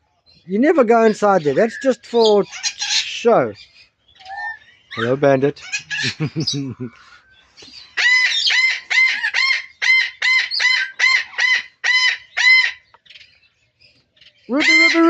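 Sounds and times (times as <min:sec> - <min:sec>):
parrot calling ringing notes: 0:08.0 - 0:12.9, 0:14.5 - 0:15.0.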